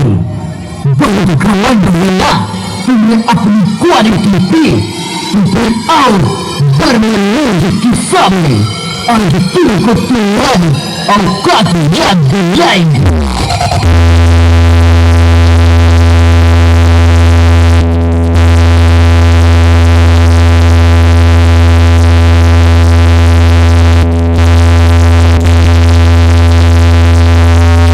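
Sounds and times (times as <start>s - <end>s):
heavy bass tone: 0.0s - 27.9s
synthesizer chord: 1.6s - 15.5s.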